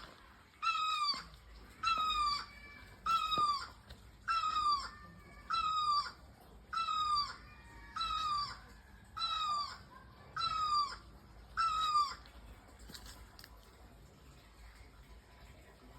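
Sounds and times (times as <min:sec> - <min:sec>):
bird calling: 0:00.6 - 0:12.3.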